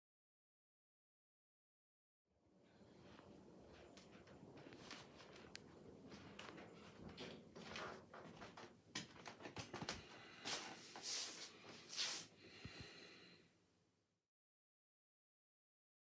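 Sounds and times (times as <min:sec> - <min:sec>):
faint rustling: 0:02.7 - 0:12.3.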